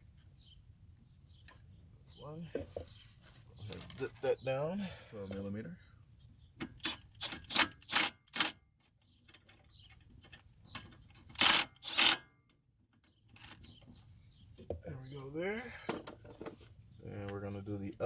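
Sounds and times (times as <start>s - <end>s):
power ratchet spinning: 6.8s - 8.5s, 11.4s - 12.2s, 13.4s - 13.6s.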